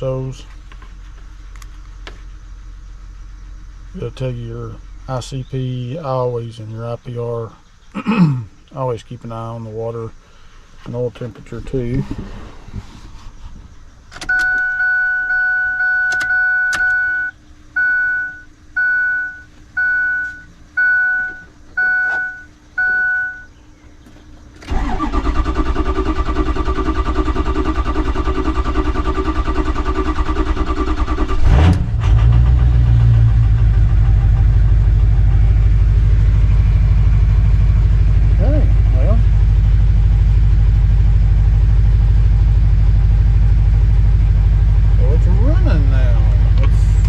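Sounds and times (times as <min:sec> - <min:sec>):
diesel engine idling: 0:00.0 - 0:07.9, 0:20.6 - 0:47.0
starter cranking engine: 0:24.6 - 0:34.4.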